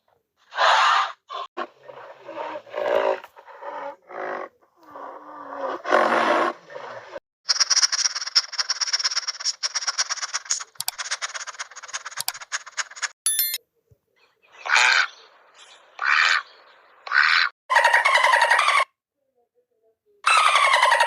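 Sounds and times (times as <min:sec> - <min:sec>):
rough growling animal call: 0:00.5 - 0:07.2.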